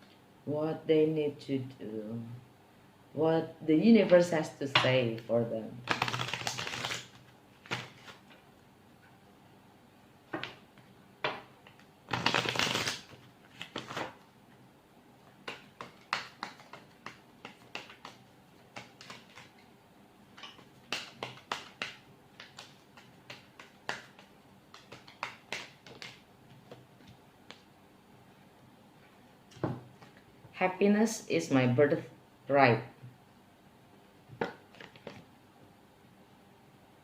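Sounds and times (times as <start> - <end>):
cards being shuffled: 5.8 - 8.4, 11.6 - 14.2, 15.4 - 19.6, 20.3 - 27.7, 34.4 - 35.3.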